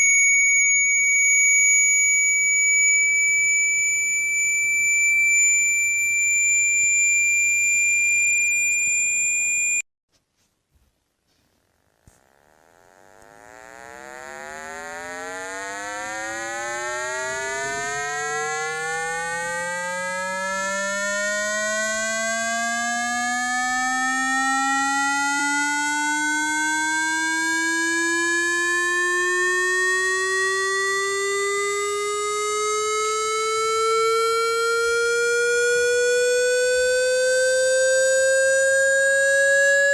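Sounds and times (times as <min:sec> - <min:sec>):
steady high-pitched tone: 0:00.0 - 0:09.8, 0:12.1 - 0:39.9
low tone rising in pitch: 0:12.2 - 0:39.9.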